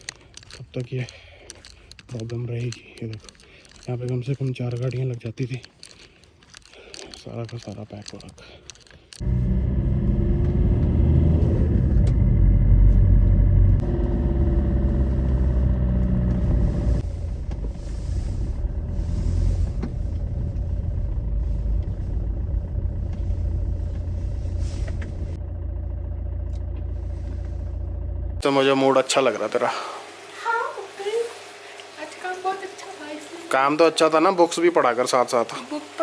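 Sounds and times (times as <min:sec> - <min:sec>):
car engine running: 0:09.2 - 0:30.3.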